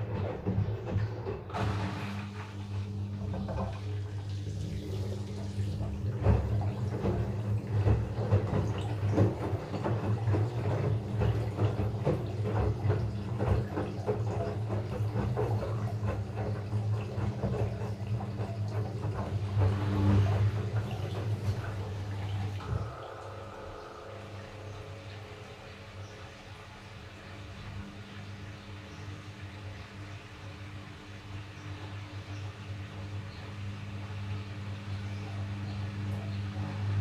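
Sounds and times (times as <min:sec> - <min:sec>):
washing machine hum: 0:00.0 - 0:37.0
water sloshing in drum: 0:00.0 - 0:37.0.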